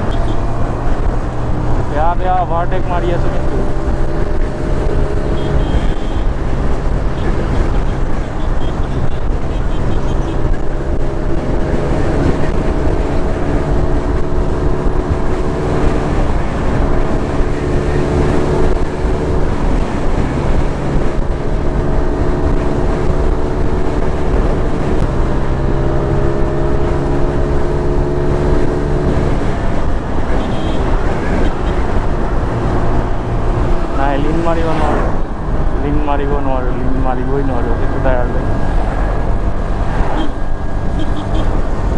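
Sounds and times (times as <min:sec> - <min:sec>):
wind noise on microphone: 0:03.3 - 0:36.2.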